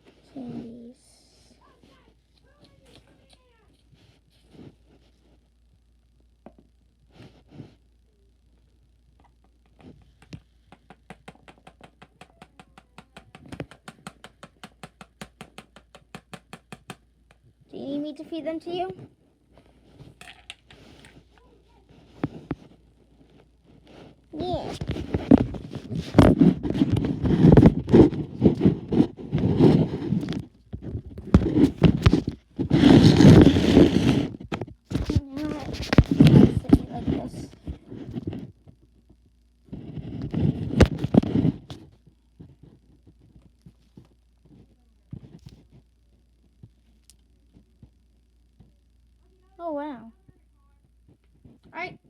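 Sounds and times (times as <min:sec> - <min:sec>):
objects knocking and rubbing: 0:09.2 - 0:17.6, 0:18.9 - 0:38.8, 0:39.7 - 0:45.9.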